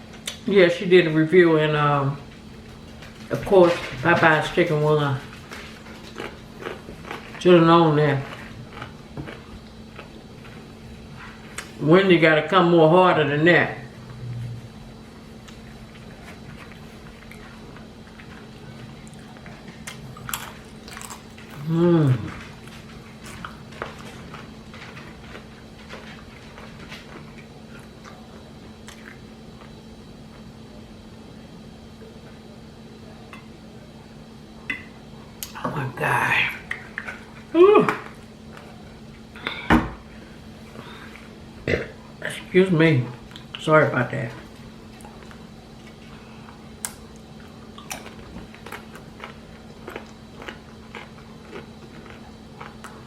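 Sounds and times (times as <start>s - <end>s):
steady low hum: 0.0s - 53.0s
person chewing food: 5.2s - 11.7s, 14.1s - 30.5s, 44.4s - 53.0s.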